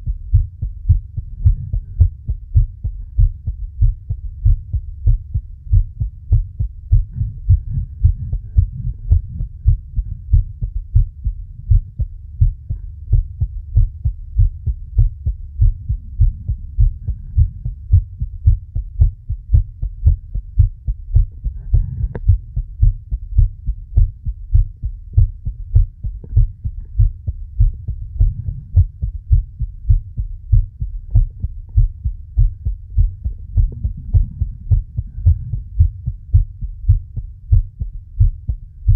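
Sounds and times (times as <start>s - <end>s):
heartbeat thumps: 0.0s - 38.9s.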